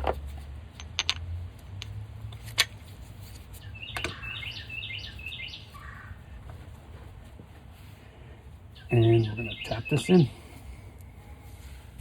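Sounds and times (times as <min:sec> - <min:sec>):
bird chirping: 0:03.6 - 0:06.2, 0:08.7 - 0:10.4.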